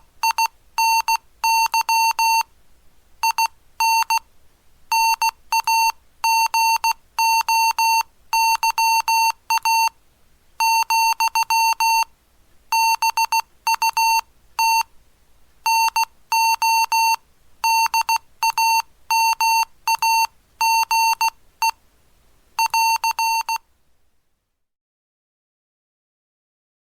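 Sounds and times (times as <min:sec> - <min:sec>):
morse code beeps: 0:00.2 - 0:02.5, 0:03.2 - 0:04.2, 0:04.9 - 0:09.9, 0:10.6 - 0:12.1, 0:12.7 - 0:14.9, 0:15.7 - 0:21.8, 0:22.6 - 0:23.6.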